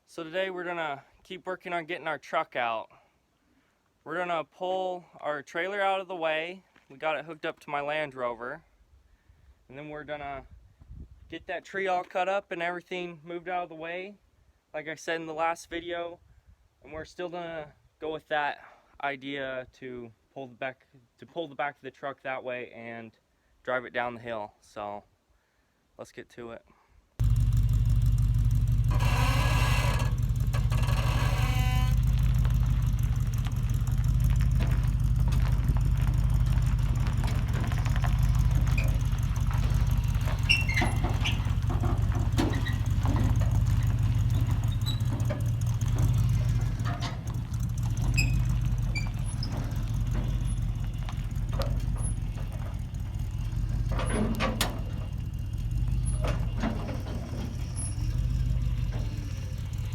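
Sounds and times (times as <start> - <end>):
engine running at low revs: 27.2 - 59.9
squeaks and clicks: 28.8 - 59.9.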